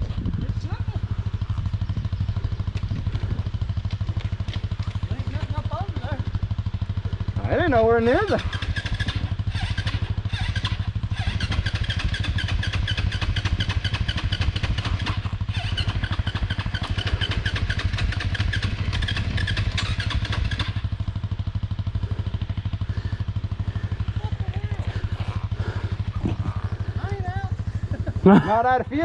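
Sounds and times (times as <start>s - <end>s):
dirt bike engine idling: 0.0s - 29.0s
higher rattle: 22.0s - 28.6s.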